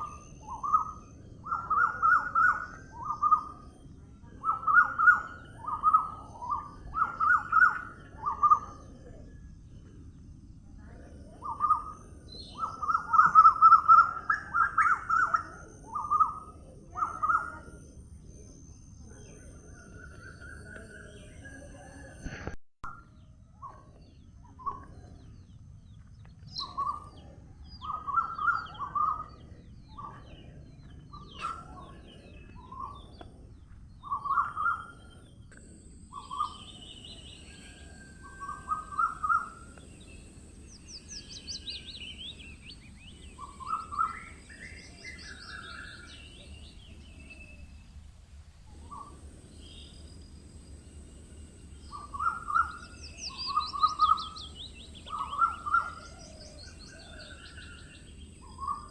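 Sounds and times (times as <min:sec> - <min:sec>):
birds singing low phrases: 0:00.0 - 0:58.9
low rumble: 0:23.4 - 0:55.3.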